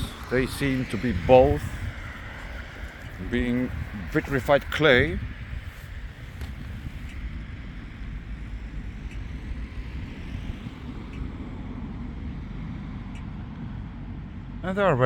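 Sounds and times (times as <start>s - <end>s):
low rumble and hiss: 0.0s - 15.0s
faint ticks: 4.4s - 11.8s.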